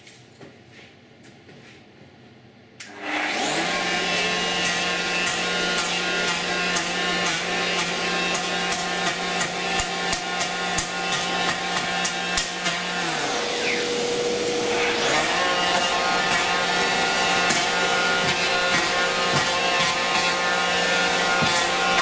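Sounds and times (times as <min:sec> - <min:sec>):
dust extraction hum: 0:02.8 - 0:22.0
electric planer cutting wood: 0:02.9 - 0:22.0.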